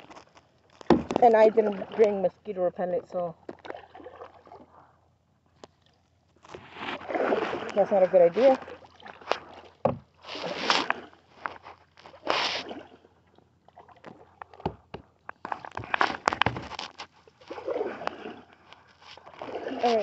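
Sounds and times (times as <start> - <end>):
water sloshing around kayak: 0.0 - 20.0
sharp knocks and clicks: 14.4 - 16.8.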